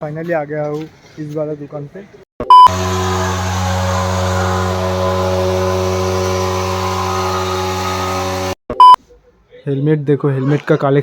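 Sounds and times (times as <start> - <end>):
loud short beep: 2.4 - 2.7, 8.7 - 9.0
steady drone of held pitches: 2.7 - 8.6.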